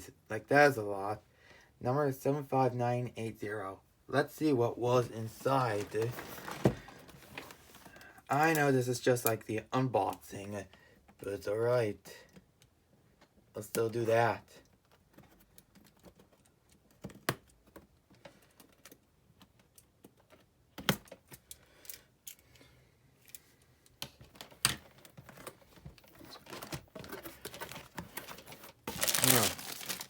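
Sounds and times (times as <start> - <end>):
cardboard rustling: 5.0 - 8.0, 24.2 - 30.0.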